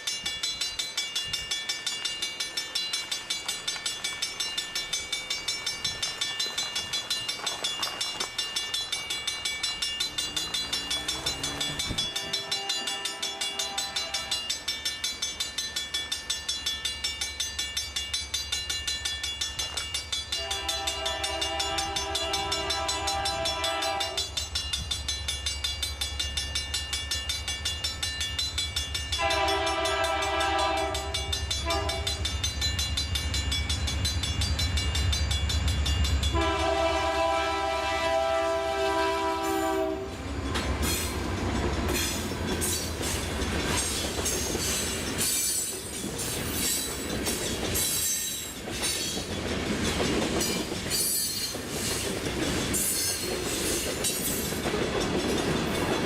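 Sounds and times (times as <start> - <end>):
diesel locomotive drone: 0.0 - 56.0
freight wheels clickety-clack: 1.0 - 36.4, 39.8 - 56.0
locomotive air horn blasts: 12.1 - 14.3, 20.4 - 24.2, 29.2 - 32.2, 36.3 - 40.2.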